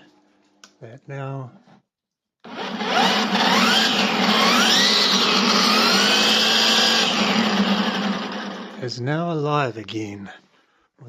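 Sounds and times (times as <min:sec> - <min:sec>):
brushcutter motor whining: 0:02.5 - 0:08.8.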